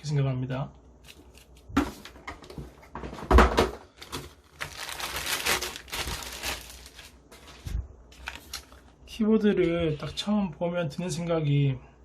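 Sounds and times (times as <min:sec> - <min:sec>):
packaging rustling and crinkling: 0:03.8 - 0:09.0.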